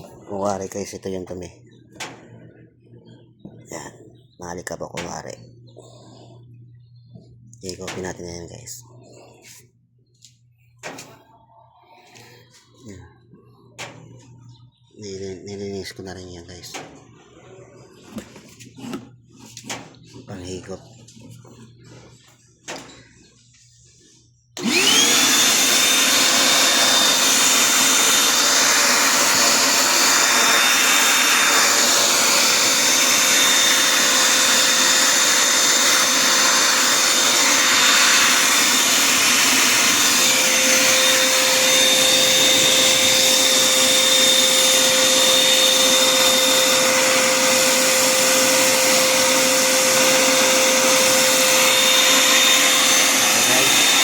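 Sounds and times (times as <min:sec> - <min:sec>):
suction rush: 0:24.6 - 0:54.0
vacuum cleaner motor whine: 0:24.6 - 0:54.0.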